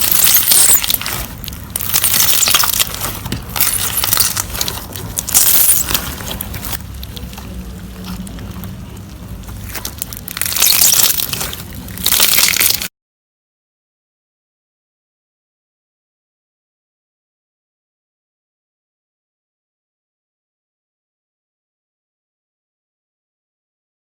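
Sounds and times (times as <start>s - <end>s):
slime crackling and crunching: 0.0s - 12.9s.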